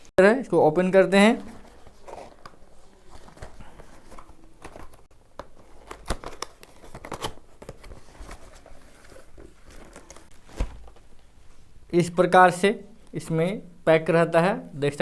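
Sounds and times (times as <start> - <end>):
cardboard packaging rustling and tearing: 1.5 - 11.0.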